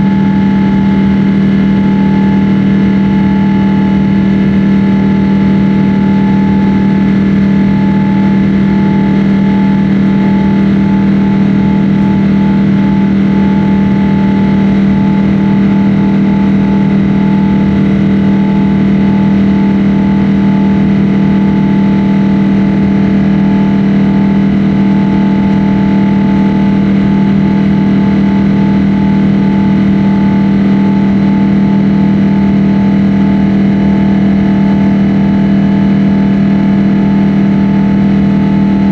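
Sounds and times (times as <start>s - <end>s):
jet engines droning in cabin: 0.0s - 38.9s.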